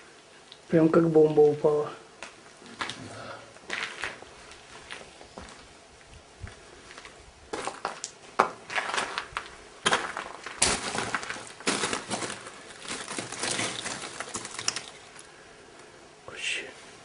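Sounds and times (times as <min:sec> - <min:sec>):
footsteps crunching over rubble: 0:02.2 - 0:15.4
sharp cracks: 0:07.6 - 0:15.4.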